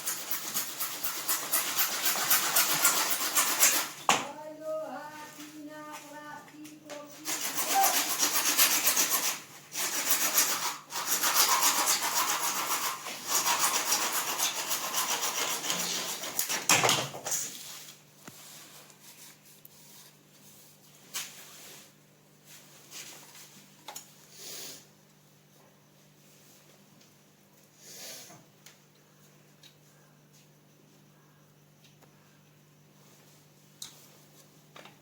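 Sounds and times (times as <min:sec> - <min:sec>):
hand tool scraping plastic pipe: 0:00.0 - 0:04.1, 0:07.1 - 0:20.2.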